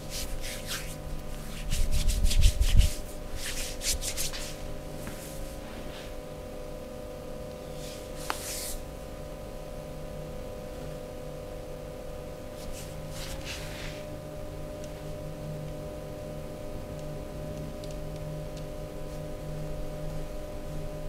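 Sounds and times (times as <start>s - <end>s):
hands brushing skin: 0.0s - 5.6s, 7.8s - 8.8s, 12.6s - 14.0s
steady hum: 0.0s - 21.0s.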